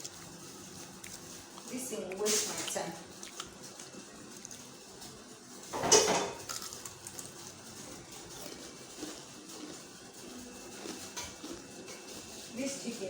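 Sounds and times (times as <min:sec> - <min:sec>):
cookware handling sounds: 0:05.7 - 0:06.4.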